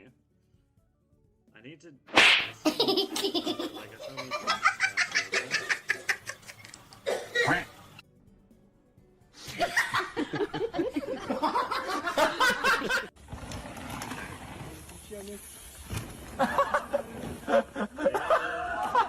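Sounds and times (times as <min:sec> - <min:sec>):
steady hiss: 0:14.7 - 0:18.0
person laughing hard: 0:16.4 - 0:19.0.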